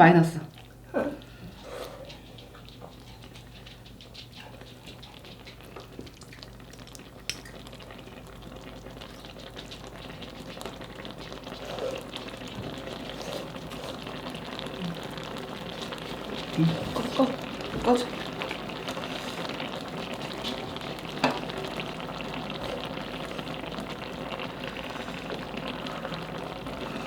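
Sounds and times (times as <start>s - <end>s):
utensil stirring clicks: 2.0s - 7.9s
food sizzling in a pan: 6.2s - 27.0s.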